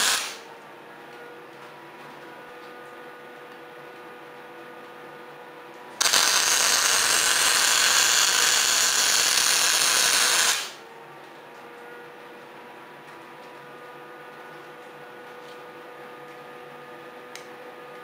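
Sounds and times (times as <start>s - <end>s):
arc welding hiss: 0.0s - 0.4s, 6.0s - 10.8s
low machine hum: 0.0s - 18.0s.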